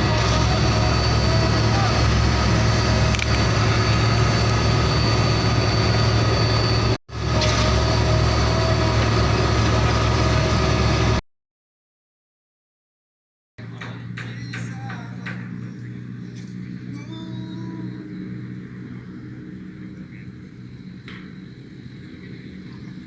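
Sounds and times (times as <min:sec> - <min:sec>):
diesel truck engine idling: 0:00.0 - 0:07.3.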